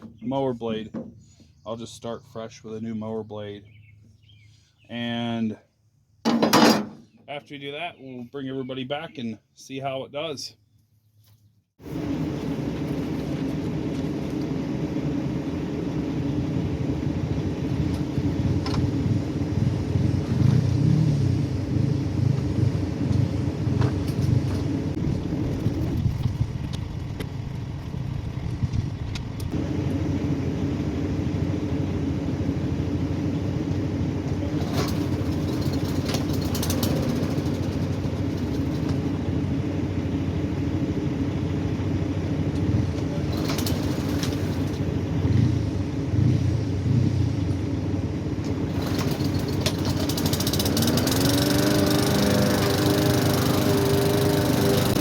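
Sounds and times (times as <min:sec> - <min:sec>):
push-mower engine running: 0:11.8 - 0:15.8, 0:34.4 - 0:39.4, 0:43.0 - 0:44.9, 0:48.7 - 0:55.0.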